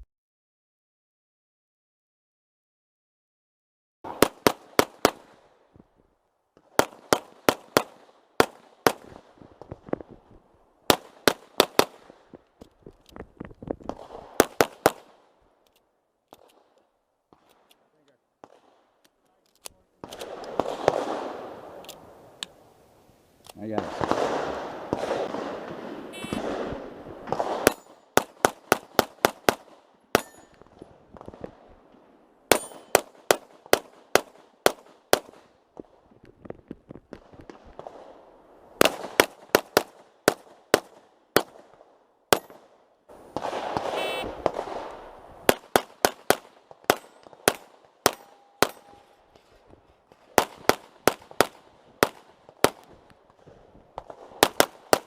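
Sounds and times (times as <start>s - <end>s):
pistol firing quick shots: 6.7s - 9.3s, 10.9s - 12.2s, 13.9s - 15.2s, 23.7s - 30.4s, 32.5s - 35.5s, 38.8s - 42.7s, 43.3s - 49.0s, 50.3s - 53.0s, 54.0s - 55.0s.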